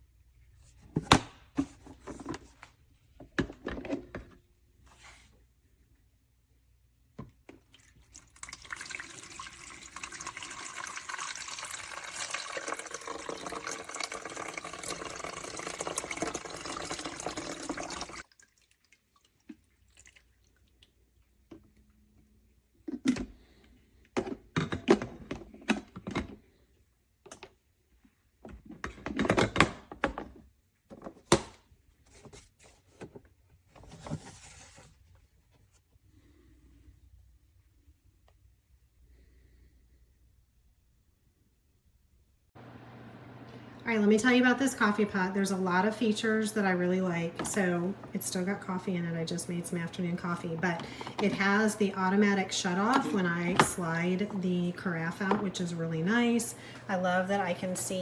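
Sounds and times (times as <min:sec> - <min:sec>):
water running: 0:07.6 - 0:21.0, 0:42.6 - 0:58.0.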